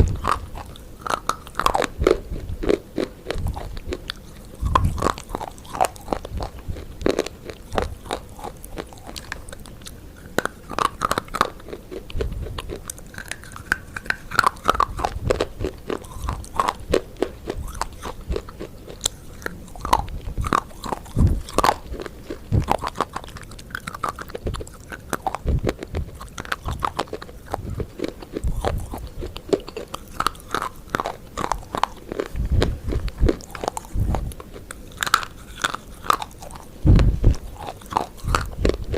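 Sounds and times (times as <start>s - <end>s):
crunching and chewing crisp food: 0.0s - 38.9s
low thuds: 36.8s - 37.5s.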